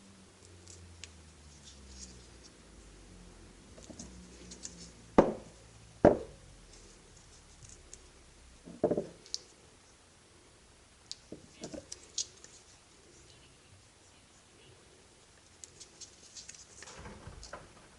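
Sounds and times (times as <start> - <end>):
light scratching and small clicks: 3.7 - 5.0, 6.7 - 8.2, 9.2 - 9.6, 11.0 - 13.5, 15.4 - 17.9
sharp knocks: 5.2 - 6.4, 8.7 - 9.1.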